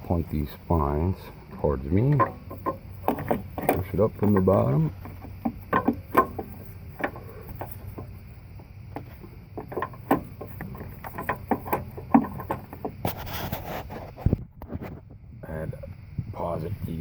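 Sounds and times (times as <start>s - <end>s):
light clicks and knocks: 1.3s - 13.2s.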